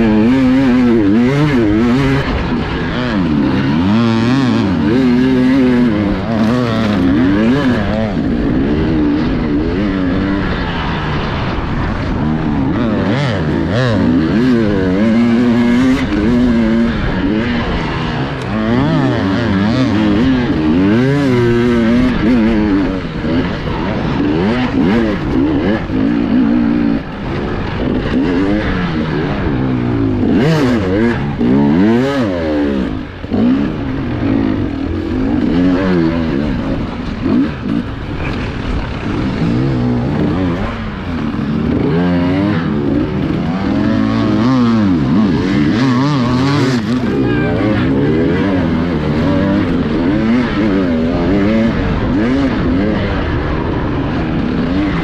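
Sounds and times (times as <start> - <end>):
motorcycle engine revving: 0.0 - 55.0.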